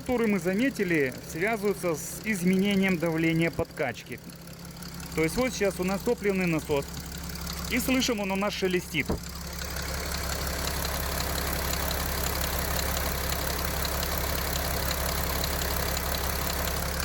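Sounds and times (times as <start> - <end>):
diesel engine idling: 0.0 - 17.0
fuel pump rustle: 0.6 - 10.6.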